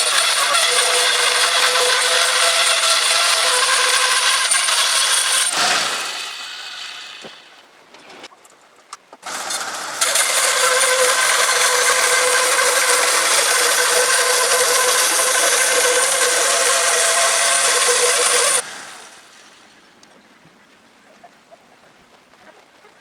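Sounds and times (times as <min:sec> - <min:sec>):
bandsaw blade whine and rasp: 0:00.0 - 0:07.6, 0:09.3 - 0:19.2.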